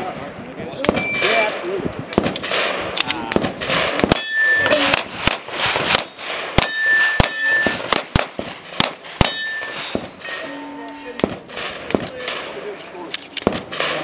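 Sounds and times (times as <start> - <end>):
steel target ringing: 4.1 - 5.0, 6.0 - 7.9, 9.2 - 11.2.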